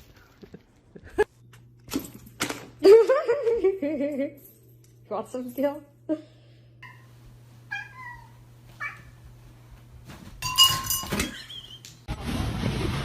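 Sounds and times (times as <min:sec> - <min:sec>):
cat meowing: 0:07.7 - 0:09.2.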